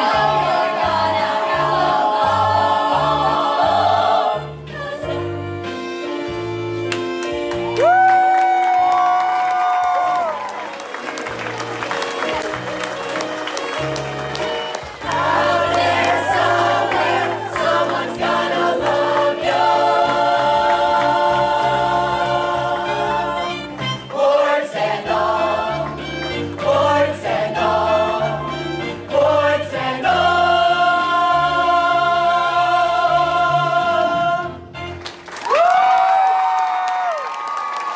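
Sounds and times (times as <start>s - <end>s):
chorus singing: 0.0s - 5.8s, 11.8s - 34.8s
instrumental accompaniment: 0.0s - 9.2s, 10.4s - 35.4s.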